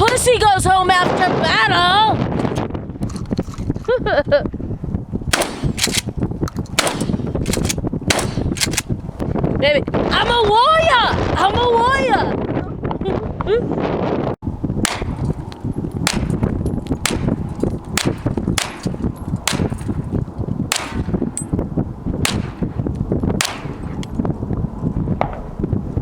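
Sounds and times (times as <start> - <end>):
wind noise on microphone: 0.0 - 26.0
gunshots: 5.3 - 6.0, 6.8 - 8.8, 14.8 - 15.2, 16.0 - 16.4, 17.0 - 17.4, 18.0 - 19.9, 20.7 - 21.2, 22.2 - 22.7, 23.4 - 24.0.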